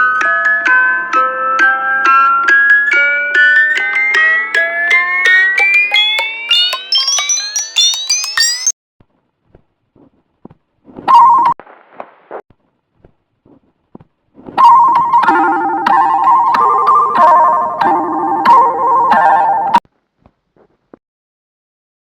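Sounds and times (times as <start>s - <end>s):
electronic ringtone melody: 0.0s - 8.8s, 11.1s - 11.6s, 14.6s - 19.8s.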